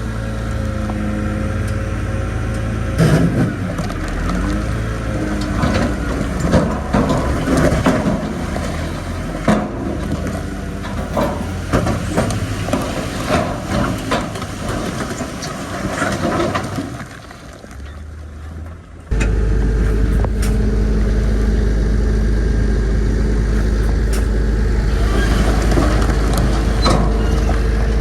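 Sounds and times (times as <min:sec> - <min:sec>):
bulldozer diesel engine running: 0:00.0 - 0:28.0
rock clanking and crunching: 0:02.6 - 0:19.2, 0:23.4 - 0:28.0.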